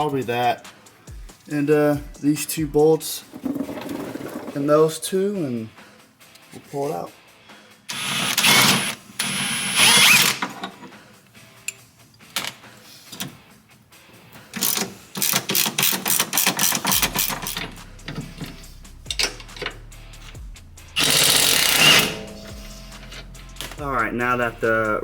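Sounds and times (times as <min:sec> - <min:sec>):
background music: 0:00.0 - 0:25.0
hand ratchet clicking: 0:07.9 - 0:10.5, 0:14.6 - 0:20.4, 0:21.0 - 0:22.3.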